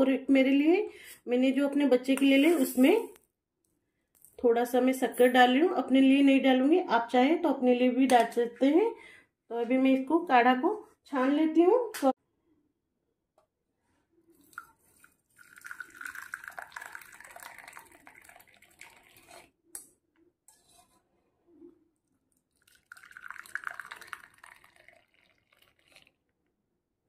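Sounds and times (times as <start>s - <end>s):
liquid pouring into cups: 14.3s - 19.8s, 22.0s - 26.4s.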